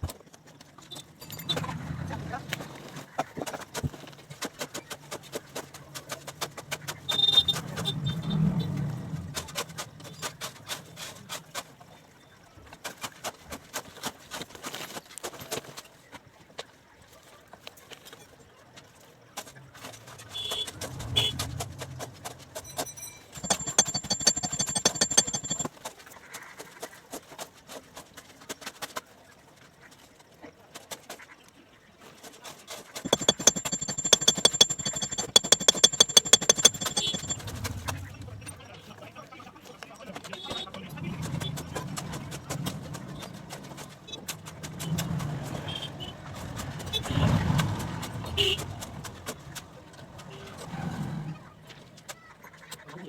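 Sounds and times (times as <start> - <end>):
metal bars clinking and rattling: 22.7 - 25.7, 33.1 - 37.5
sharp clicks and taps: 23.4 - 25.7, 33.1 - 37.4.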